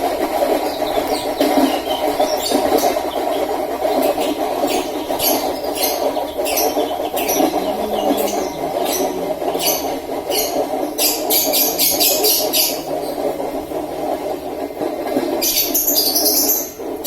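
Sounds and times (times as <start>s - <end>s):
spinner machine whirring: 0.0s - 17.0s
high-pitched squeaky rasps: 0.6s - 13.2s.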